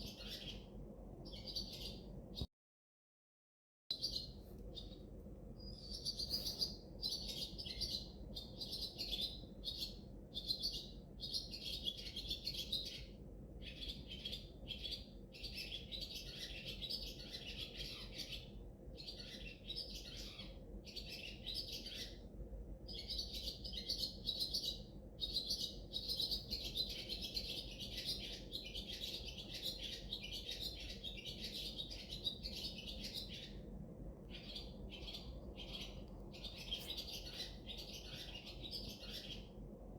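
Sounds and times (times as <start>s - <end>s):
small birds chirping: 0.0s - 2.5s, 3.9s - 39.8s.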